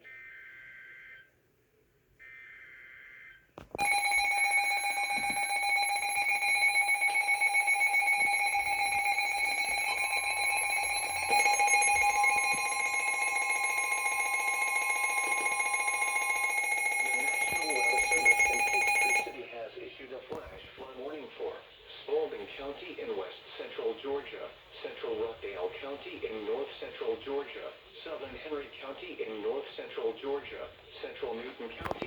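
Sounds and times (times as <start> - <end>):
steady attention tone: 3.8 - 19.4.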